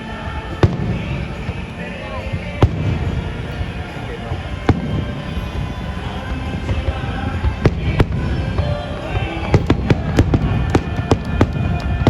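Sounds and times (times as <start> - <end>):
fireworks bursting: 0.0 - 12.0
steady low rumble: 0.0 - 12.0.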